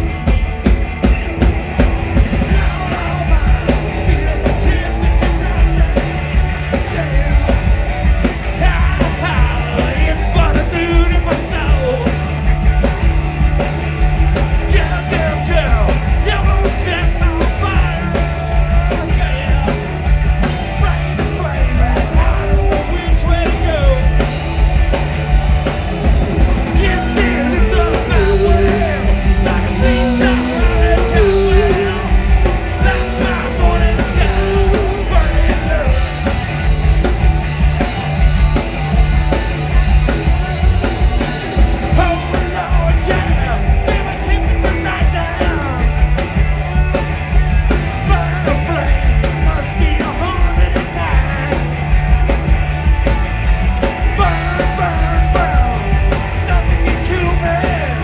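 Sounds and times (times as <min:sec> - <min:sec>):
punk rock band playing: 0:00.0 - 0:58.0
person singing and yelling: 0:02.5 - 0:12.9, 0:14.7 - 0:24.4, 0:26.7 - 0:36.8, 0:39.7 - 0:46.5, 0:47.7 - 0:52.3, 0:53.9 - 0:58.0.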